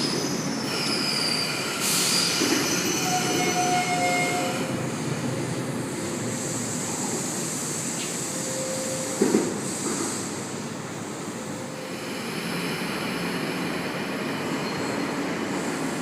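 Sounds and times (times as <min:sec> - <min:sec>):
train wheels and motors rumbling: 0:00.0 - 0:16.0
high-pitched wheel squeals: 0:00.2 - 0:04.7, 0:14.5 - 0:15.2.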